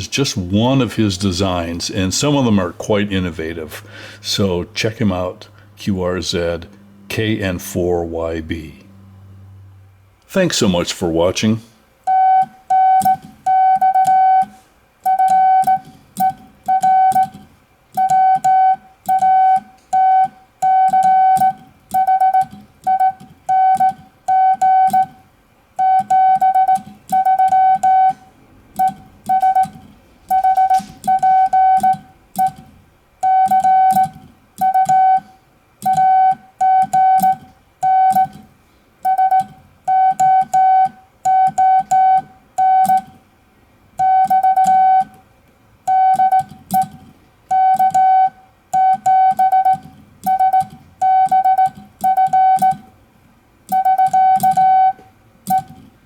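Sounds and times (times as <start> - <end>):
morse code sidetone beeping: 0.0 - 9.9, 10.7 - 43.2, 44.0 - 45.2, 45.9 - 52.9, 53.7 - 55.9
key contacts clicking: 12.0 - 43.3, 44.0 - 45.2, 45.8 - 53.0, 53.7 - 56.0.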